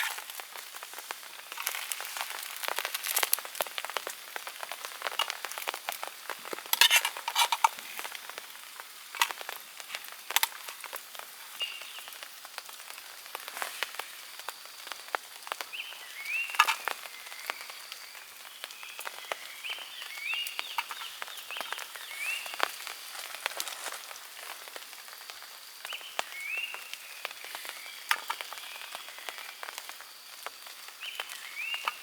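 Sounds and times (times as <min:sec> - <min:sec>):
rain pattering and dripping: 0:00.0 - 0:32.0.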